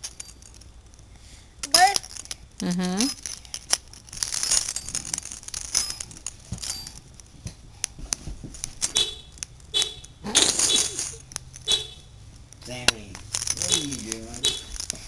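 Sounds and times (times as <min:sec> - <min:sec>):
keys jangling: 0:01.6 - 0:07.2, 0:08.6 - 0:11.8, 0:13.1 - 0:15.0.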